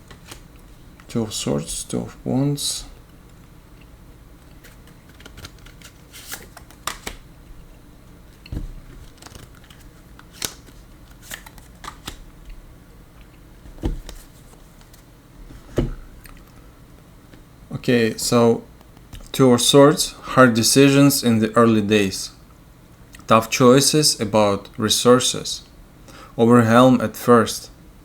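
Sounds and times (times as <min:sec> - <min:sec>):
cards tapping and flicking: 0:04.4 - 0:07.2, 0:08.4 - 0:12.2.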